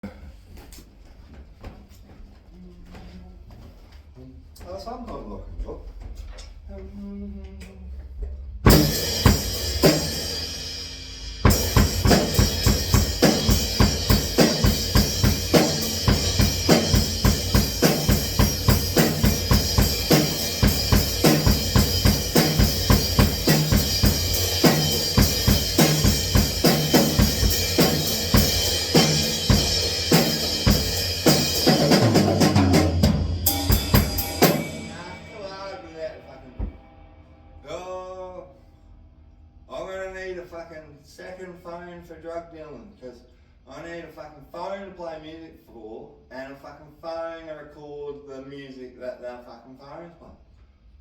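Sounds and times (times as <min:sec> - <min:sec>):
drum kit playing: 0:08.6 - 0:37.2.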